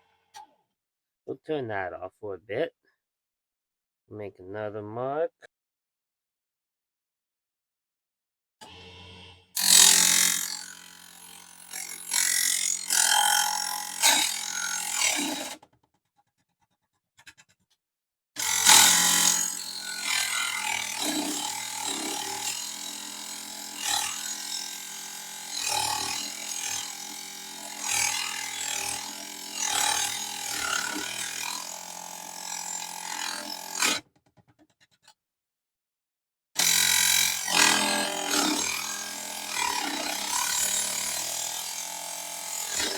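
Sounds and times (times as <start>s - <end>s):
table saw cutting metal: 8.6s - 15.6s, 18.4s - 34.0s, 36.6s - 42.9s.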